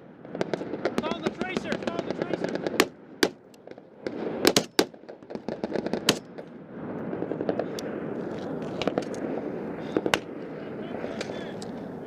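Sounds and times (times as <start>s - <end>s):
gunshots: 0.2s - 12.0s
faint gunfire cracks: 8.7s - 10.4s.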